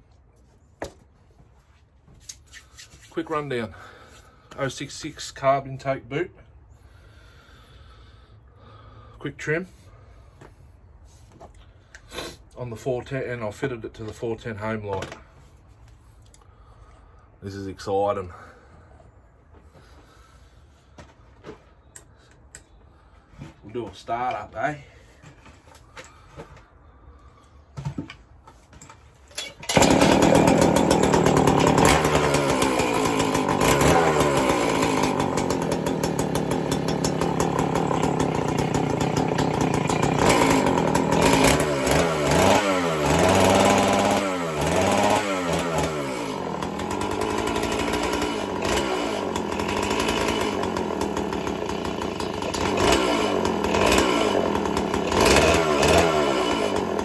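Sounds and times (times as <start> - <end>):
chainsaw running: 29.4 - 57.0
chainsaw throttle blips: 29.7 - 57.0.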